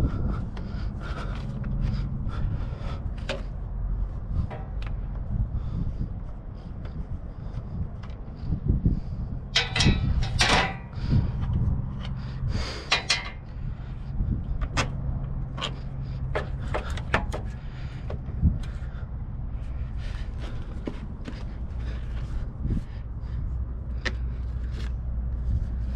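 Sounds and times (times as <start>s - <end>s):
steady low rumble: 0.0s - 25.9s
metal tools clanking: 9.5s - 11.0s, 12.7s - 13.6s.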